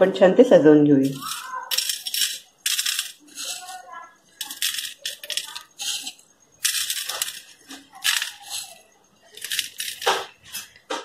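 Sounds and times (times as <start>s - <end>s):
crispy noodles sprinkled by hand: 1.0s - 10.7s.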